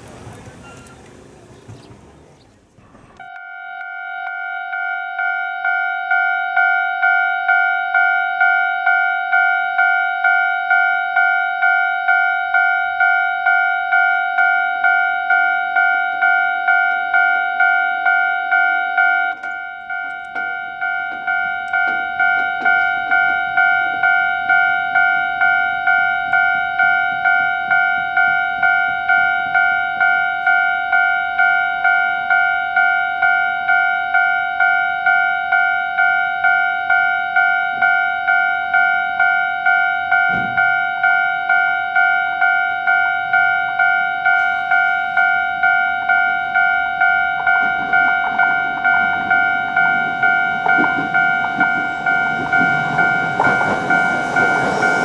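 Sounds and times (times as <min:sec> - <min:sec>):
level crossing warning bell: 0:03.2 - 0:55.0.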